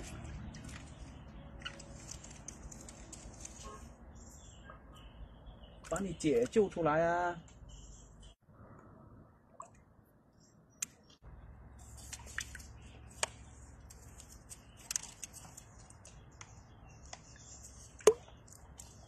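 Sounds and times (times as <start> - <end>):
faint bird chirping: 0.2 - 6.7, 7.3 - 9.4.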